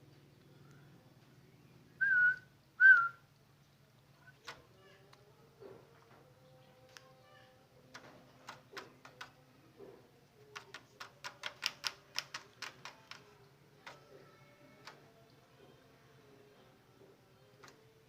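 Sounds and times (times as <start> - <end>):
sharp dry clicks: 10.5 - 14.0.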